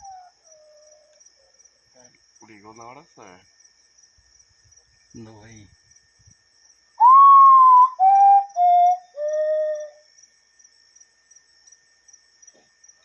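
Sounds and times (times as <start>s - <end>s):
cricket trilling: 0.0s - 13.0s
bird whistled song: 7.0s - 10.0s.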